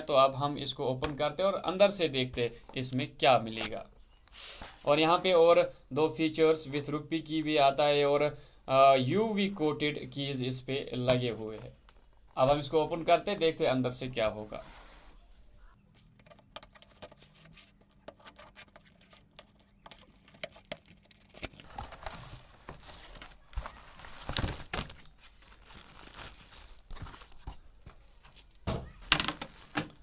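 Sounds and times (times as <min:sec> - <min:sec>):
plastic wrapping crinkling: 0:18.8 - 0:30.0.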